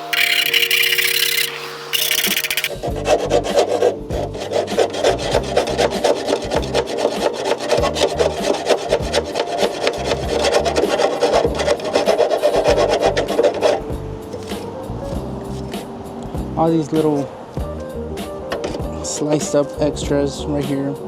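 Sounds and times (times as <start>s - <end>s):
metal file rasping on steel: 0.0s - 14.7s.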